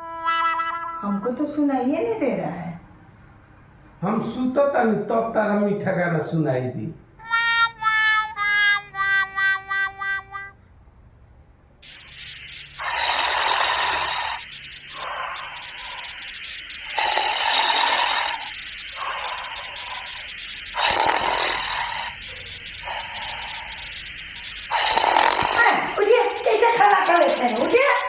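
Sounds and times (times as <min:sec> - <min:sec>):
person snoring loudly: 0:12.8 - 0:14.4, 0:16.9 - 0:20.2, 0:20.8 - 0:22.2, 0:24.7 - 0:26.0
soft breath: 0:12.8 - 0:26.0.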